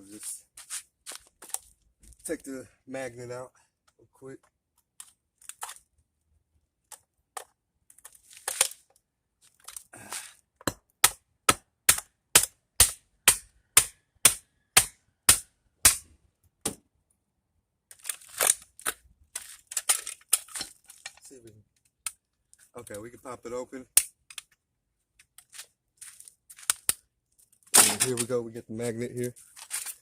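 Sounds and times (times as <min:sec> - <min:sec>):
plastic housing cracking under blows: 0:17.9 - 0:22.6, 0:26.5 - 0:28.4.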